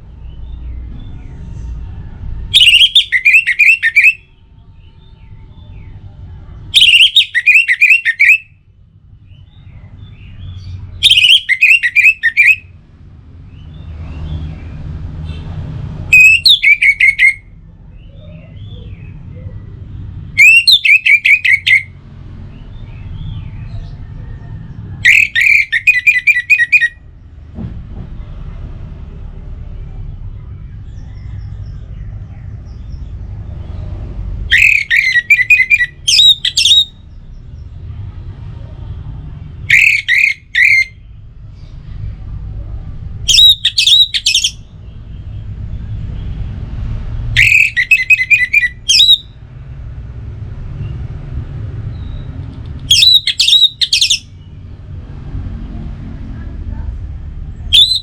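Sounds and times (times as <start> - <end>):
thrush singing: 2.5 - 4.2, 6.7 - 8.5, 11.0 - 12.7, 25.0 - 27.0, 34.5 - 36.9, 43.3 - 44.7, 47.3 - 49.2, 52.9 - 54.4.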